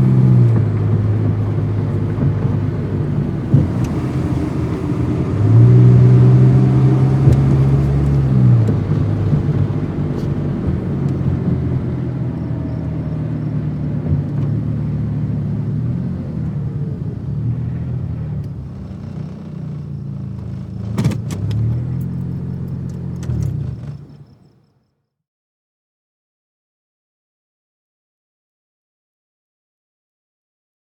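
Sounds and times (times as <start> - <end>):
car engine revving: 0.0 - 24.4.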